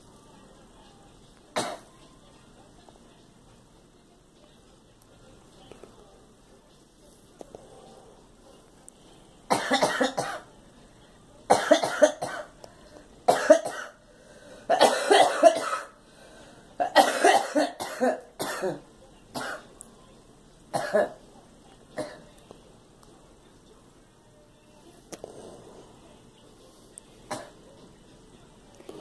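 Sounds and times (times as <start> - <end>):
girl coughing: 1.6 - 1.9, 9.5 - 10.4, 11.5 - 12.5, 13.3 - 14.0, 14.7 - 15.9, 16.8 - 18.8.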